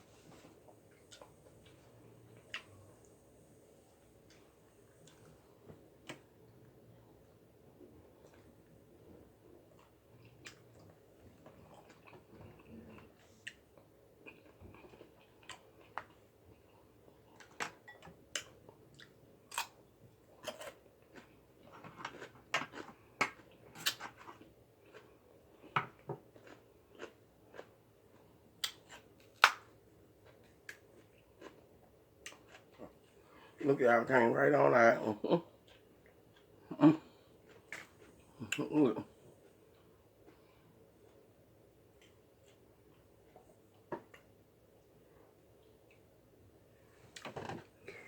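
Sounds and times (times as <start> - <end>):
person chewing and mouth smacks: 0.2 - 3.2, 8.1 - 33.1, 35.5 - 38.8.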